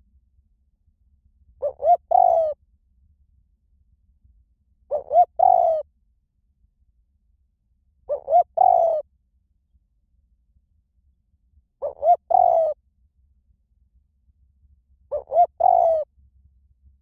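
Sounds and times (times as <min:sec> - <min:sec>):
dove cooing: 0:01.6 - 0:02.6, 0:04.9 - 0:05.8, 0:08.1 - 0:09.0, 0:11.8 - 0:12.8, 0:15.1 - 0:16.1.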